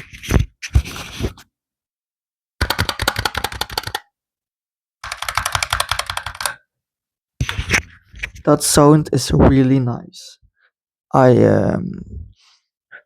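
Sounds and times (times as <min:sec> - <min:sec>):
rapid keyboard keystroke clicks: 0:02.6 - 0:04.1, 0:05.0 - 0:06.6.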